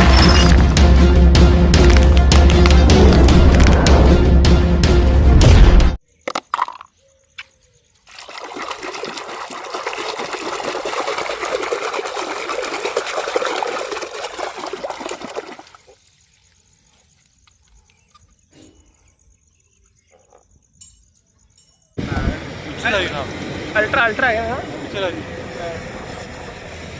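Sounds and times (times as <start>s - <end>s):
running water splashing: 8.0s - 16.4s.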